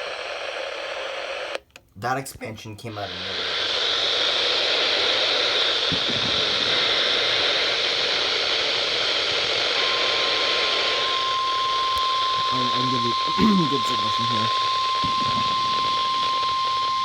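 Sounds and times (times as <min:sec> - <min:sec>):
radio static hiss: 0:00.0 - 0:17.0
steady high alert tone: 0:12.5 - 0:14.5.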